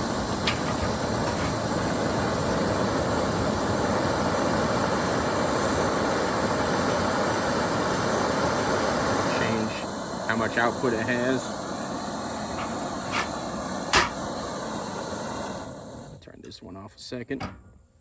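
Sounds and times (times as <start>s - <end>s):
camping stove flame hissing: 0.0s - 16.2s.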